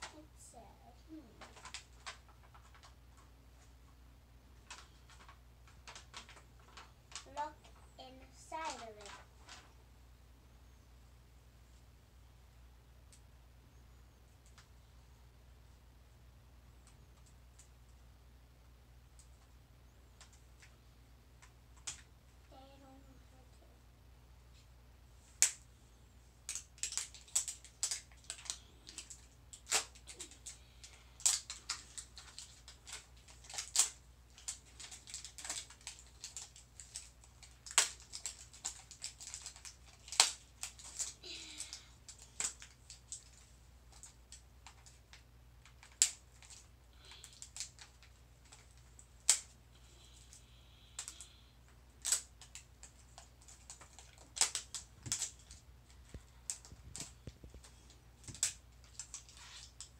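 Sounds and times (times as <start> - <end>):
plastic packaging clicks and crinkles: 1.1 - 3.7, 4.6 - 9.8, 21.4 - 22.1, 25.4 - 25.6, 26.4 - 59.9.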